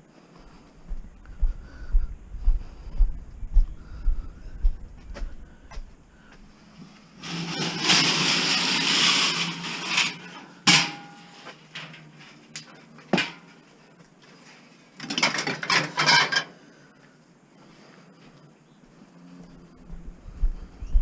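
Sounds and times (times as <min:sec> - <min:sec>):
scrap metal clattering: 0:07.1 - 0:13.6, 0:15.0 - 0:16.6
metal clank ringing: 0:10.7 - 0:11.4.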